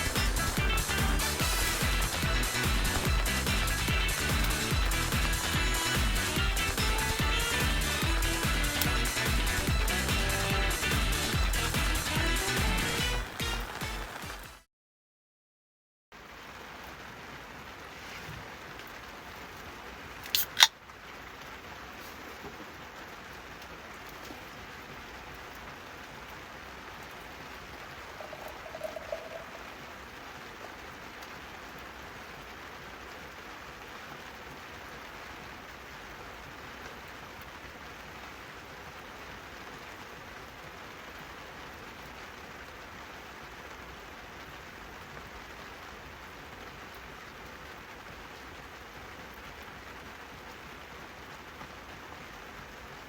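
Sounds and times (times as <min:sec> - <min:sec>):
steady rain falling: 0:00.0 - 0:14.6, 0:16.1 - 0:53.0
sharp clicks: 0:20.2 - 0:20.7.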